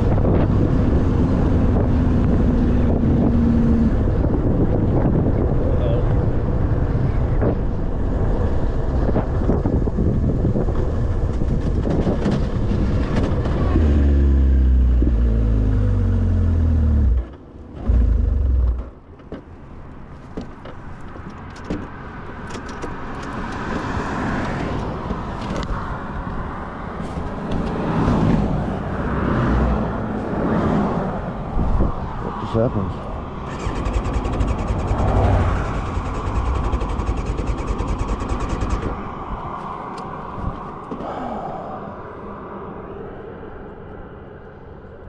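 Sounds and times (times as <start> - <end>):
uneven engine noise: 0.0 - 45.0
motorcycle engine revving: 13.0 - 19.0, 33.4 - 39.1.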